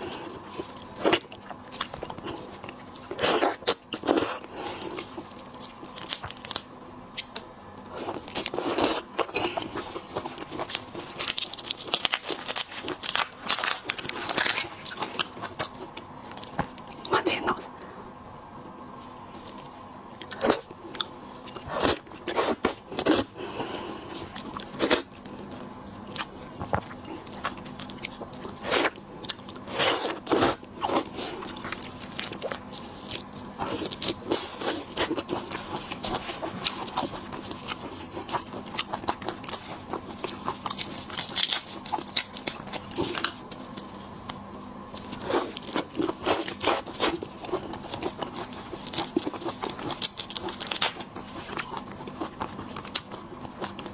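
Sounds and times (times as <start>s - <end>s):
shells cracking and crunching: 10.3s - 15.6s, 44.9s - 53.9s
chewing: 19.4s - 53.9s.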